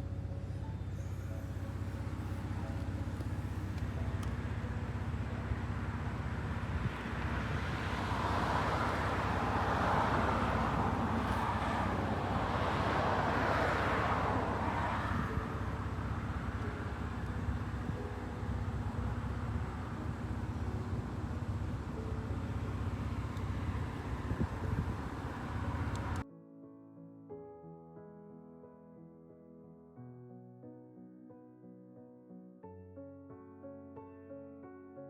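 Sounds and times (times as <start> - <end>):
low traffic rumble: 0.0 - 26.2
vehicle passing: 0.1 - 26.2.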